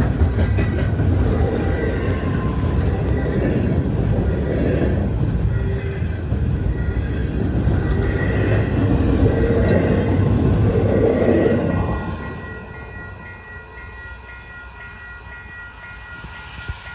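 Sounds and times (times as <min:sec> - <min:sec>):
freight train rumble and wheel clatter: 0:00.0 - 0:16.9
faint high ringing tone: 0:11.7 - 0:16.9.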